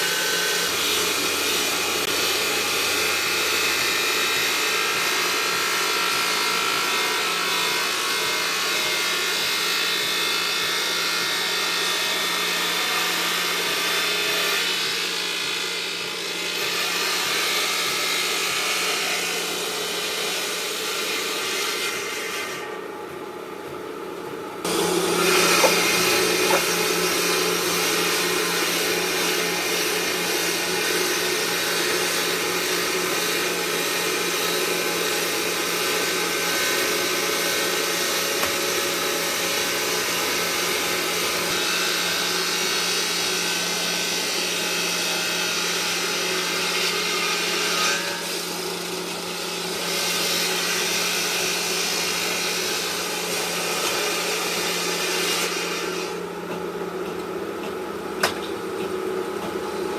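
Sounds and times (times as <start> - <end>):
stone grinding: 25.1 - 27.8.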